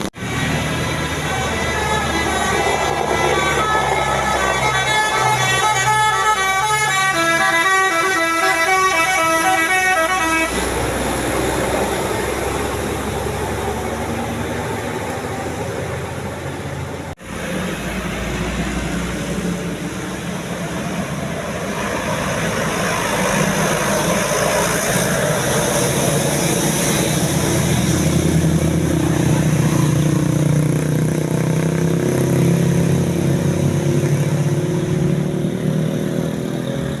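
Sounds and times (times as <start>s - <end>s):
bus engine rumble: 0.0s - 37.0s
road noise: 0.0s - 37.0s
multi-tone bus horn melody: 0.4s - 12.5s.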